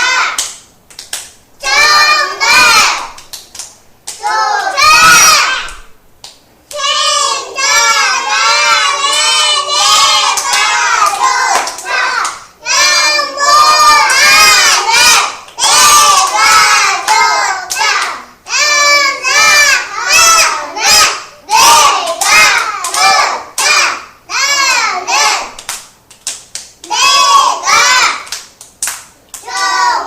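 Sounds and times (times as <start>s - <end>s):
children shouting in unison: 1.6s - 3.1s, 4.2s - 5.8s, 6.8s - 25.5s, 26.9s - 28.3s.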